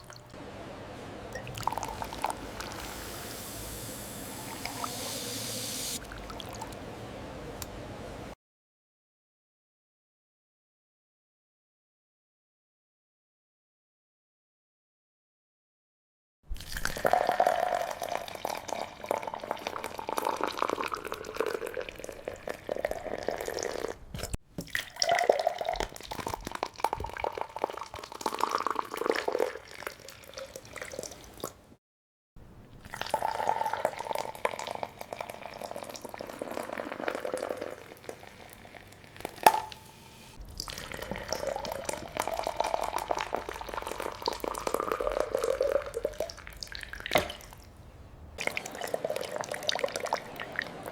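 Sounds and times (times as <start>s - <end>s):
liquid dripping and splashing: 1.3s - 6.9s.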